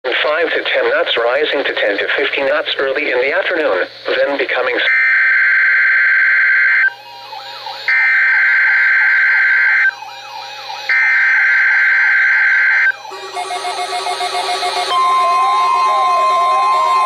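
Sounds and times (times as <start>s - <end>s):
cluster of steady tones: 6.8s - 17.0s.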